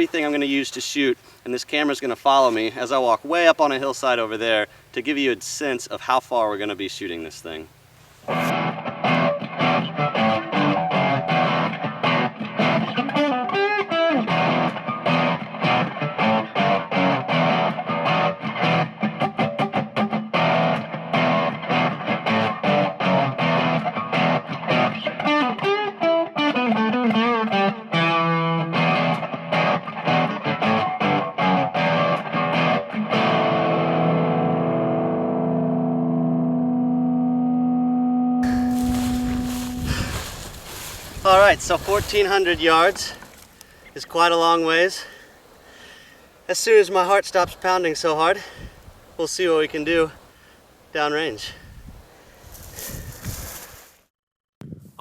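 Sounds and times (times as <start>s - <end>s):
distorted electric guitar riffs: 8.3s - 43.0s.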